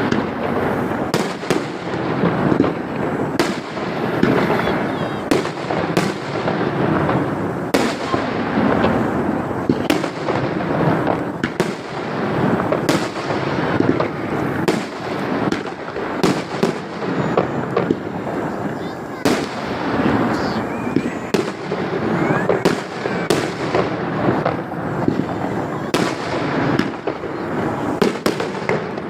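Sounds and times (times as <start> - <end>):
firework crackling: 0.0 - 29.0
firework shells bursting: 0.0 - 29.0.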